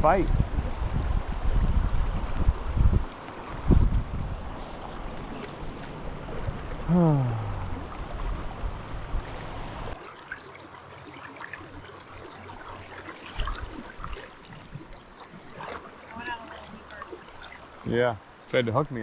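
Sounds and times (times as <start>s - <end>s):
river water rushing: 2.2s - 19.0s.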